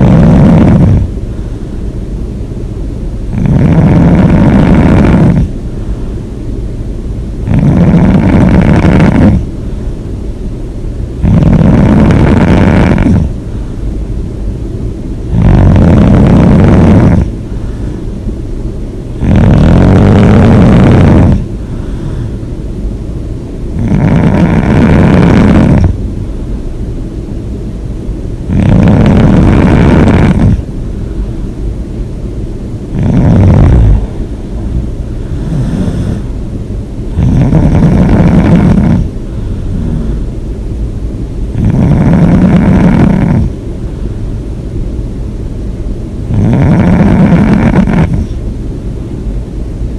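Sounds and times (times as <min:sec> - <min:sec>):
person snoring loudly: 0:00.0 - 0:01.1, 0:03.3 - 0:05.6, 0:07.4 - 0:09.5, 0:11.2 - 0:13.4, 0:15.3 - 0:17.3, 0:19.2 - 0:21.5, 0:23.8 - 0:26.0, 0:28.5 - 0:30.6, 0:32.9 - 0:36.4, 0:37.1 - 0:40.3, 0:41.6 - 0:43.5, 0:46.3 - 0:48.3
quiet breathing: 0:00.0 - 0:02.2, 0:03.3 - 0:06.6, 0:07.4 - 0:10.2, 0:11.0 - 0:14.2, 0:15.2 - 0:18.5, 0:19.1 - 0:22.9, 0:28.5 - 0:32.0, 0:32.7 - 0:40.7, 0:41.5 - 0:44.5.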